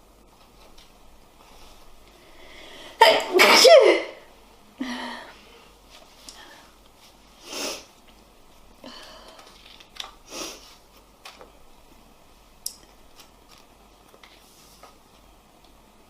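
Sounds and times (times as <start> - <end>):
person sniffing: 7.4 - 7.9, 10.2 - 10.8.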